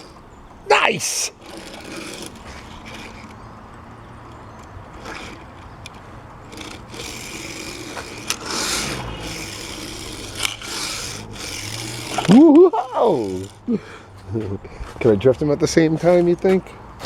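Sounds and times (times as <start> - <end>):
toy car rolling on plastic track: 0.0 - 13.6.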